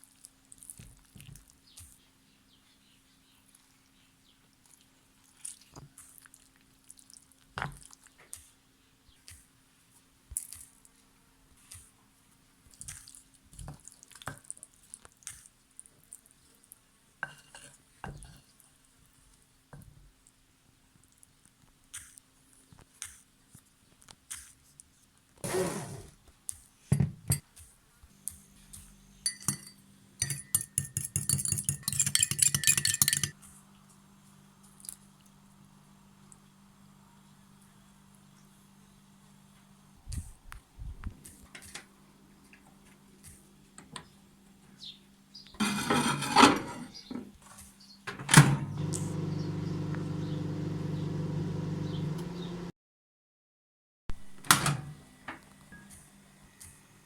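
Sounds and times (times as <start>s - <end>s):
utensil clinking against kitchenware: 29.2s - 33.4s
microwave door clacking shut: 48.2s - 48.8s
microwave oven humming: 48.3s - 52.7s.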